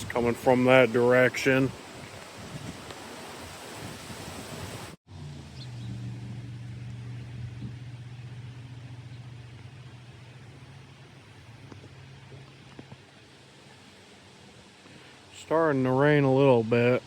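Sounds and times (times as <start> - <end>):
wind buffeting microphone: 0.0 - 5.0, 5.6 - 13.1
vehicle engine idling: 5.1 - 15.4.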